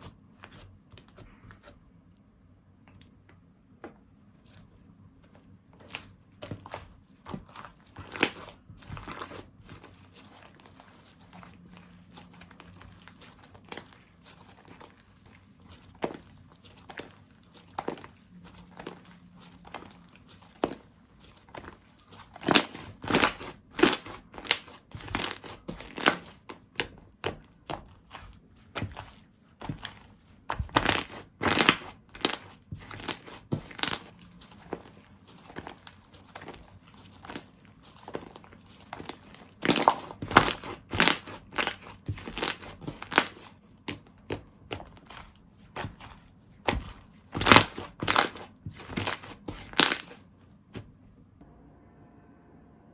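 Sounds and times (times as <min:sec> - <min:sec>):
slime crackling and popping: 0:07.4 - 0:50.2.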